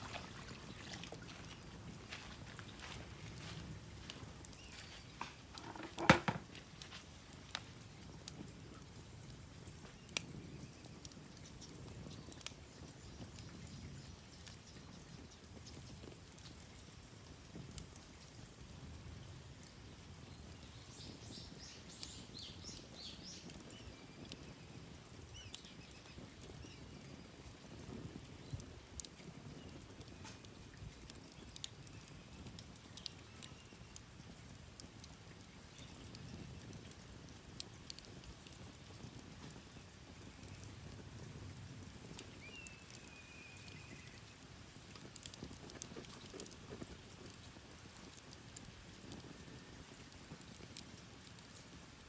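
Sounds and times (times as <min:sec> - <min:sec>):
campfire crackling and popping: 0:00.0 - 0:52.0
songbird singing: 0:04.4 - 0:06.3, 0:20.3 - 0:27.3, 0:42.2 - 0:44.4.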